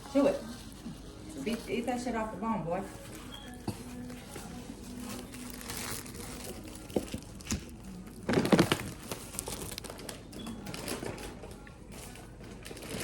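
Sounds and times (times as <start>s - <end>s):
food wrapping crinkling: 2.8s - 13.0s.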